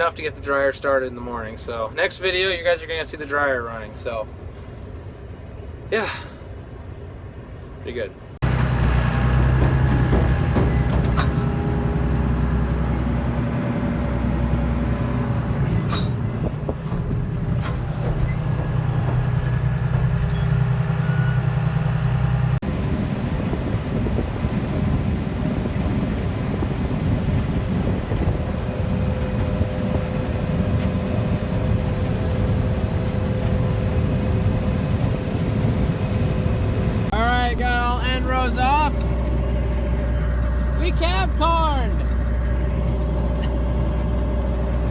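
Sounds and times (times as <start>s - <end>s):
combine harvester running: 0.0s - 44.9s.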